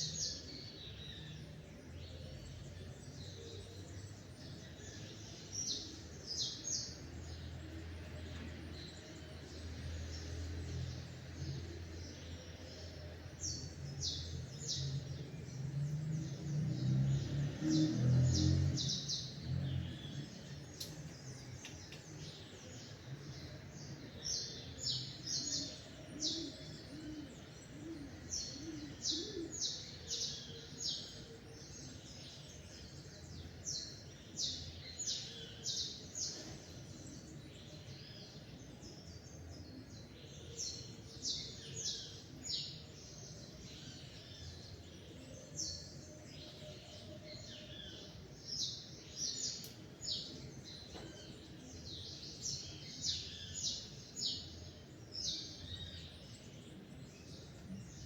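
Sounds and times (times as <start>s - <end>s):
faint outdoor background hum: 0.0s - 58.0s
songbirds chirping: 0.0s - 58.0s.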